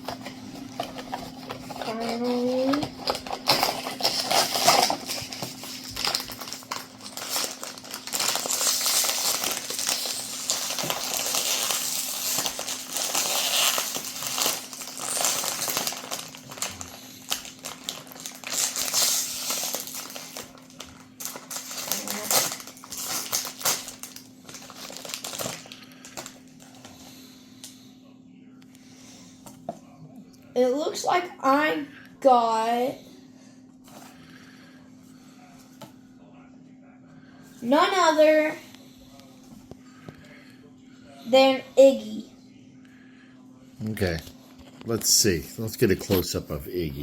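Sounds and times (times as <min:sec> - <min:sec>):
packaging crinkling and rustling: 0:00.0 - 0:26.9
faint steady hum: 0:00.0 - 0:47.0.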